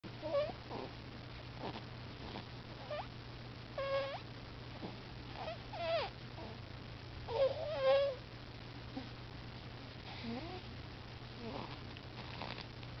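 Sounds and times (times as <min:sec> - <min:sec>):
baby squeaky snoring: 0:00.2 - 0:00.9, 0:01.6 - 0:03.1, 0:03.8 - 0:04.2, 0:05.4 - 0:06.6, 0:07.3 - 0:08.2.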